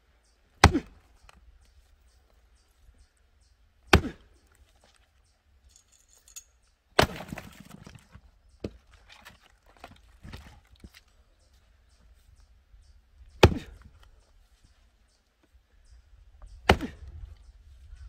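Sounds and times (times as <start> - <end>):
axe striking log: 0.6 - 1.0, 3.9 - 4.3, 7.0 - 8.0, 13.4 - 13.9, 16.6 - 17.1.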